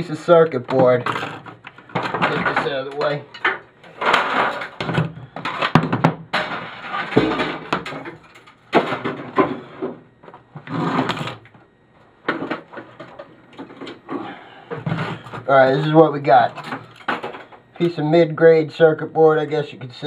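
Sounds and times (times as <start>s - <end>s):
plastic and metal pieces clattering: 0.8s - 9.6s, 14.8s - 17.6s.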